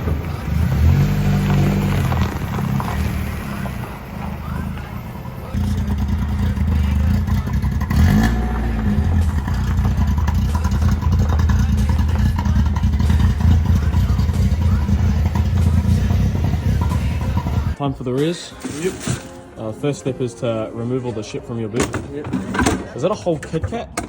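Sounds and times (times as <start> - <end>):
car engine rumble: 0.0 - 17.8.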